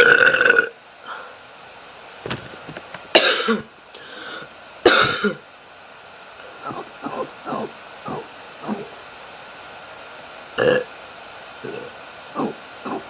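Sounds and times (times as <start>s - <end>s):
man burping: 10.6s - 10.9s, 11.6s - 12.0s.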